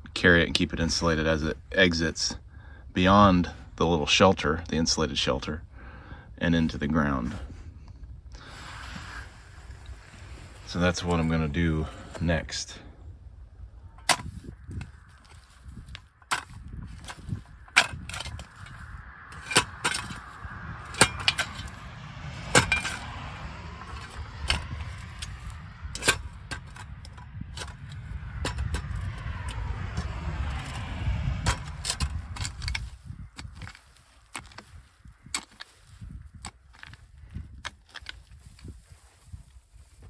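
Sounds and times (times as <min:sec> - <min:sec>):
low rumble: 0:06.7 - 0:40.0
shovel striking and scraping soil: 0:14.0 - 0:40.0.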